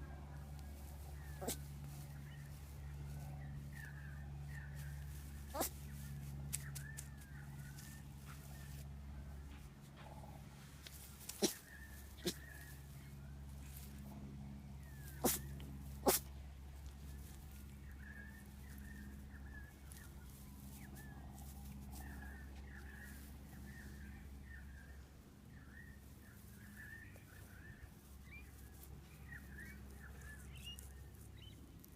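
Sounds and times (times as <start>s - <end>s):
steady low hum: 0.0s - 31.9s
puppy sneezing: 15.2s - 15.4s, 16.0s - 16.3s.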